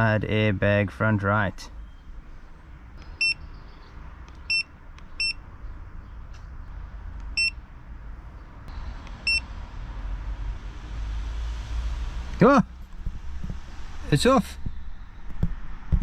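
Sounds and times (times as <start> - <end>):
low rumble: 6.7 - 16.0.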